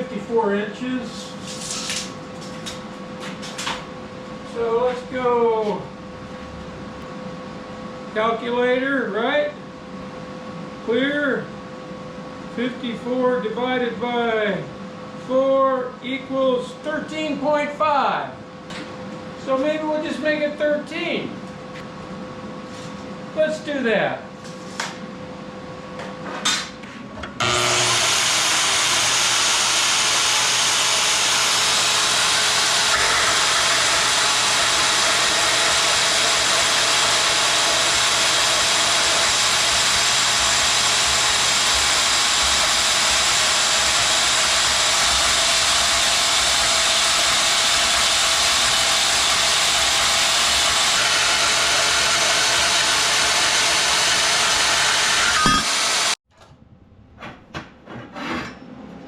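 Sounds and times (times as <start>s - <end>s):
power tool cutting steel: 27.4s - 56.2s.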